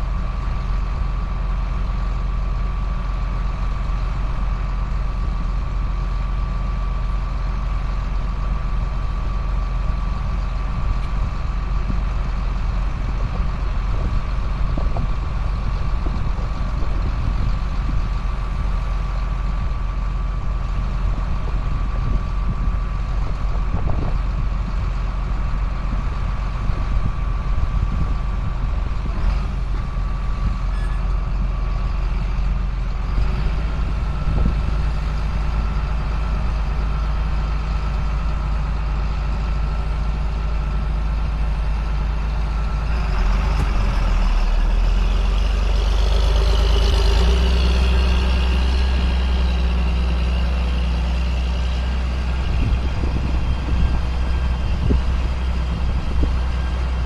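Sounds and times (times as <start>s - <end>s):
sprayer engine drone: 0.0s - 57.0s.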